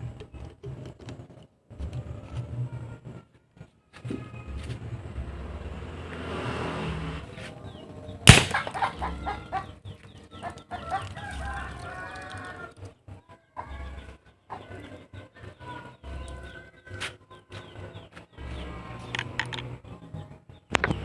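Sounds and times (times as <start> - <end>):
birds calling: 7.3 - 21.0
sharp gunshot bang: 8.3 - 8.8.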